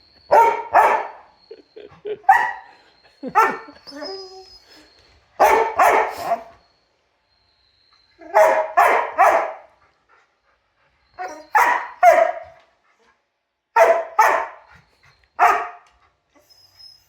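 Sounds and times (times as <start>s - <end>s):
dog barking: 0.3s - 1.3s, 2.3s - 2.7s, 3.4s - 3.7s, 5.4s - 6.5s, 8.3s - 9.7s, 11.2s - 12.6s, 13.8s - 14.7s, 15.4s - 15.8s.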